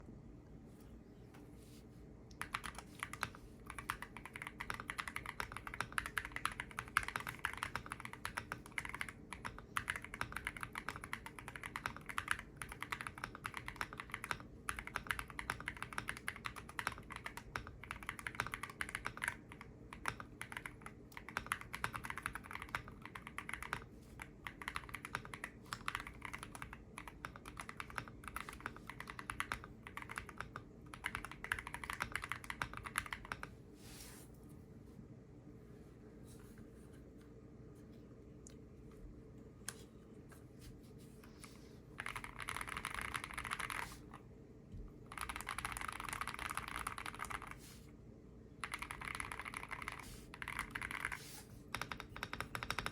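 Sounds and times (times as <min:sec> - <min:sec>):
fast mechanical keyboard typing: 0:02.4 - 0:33.5, 0:42.0 - 0:44.0, 0:45.1 - 0:47.6, 0:48.6 - 0:52.9.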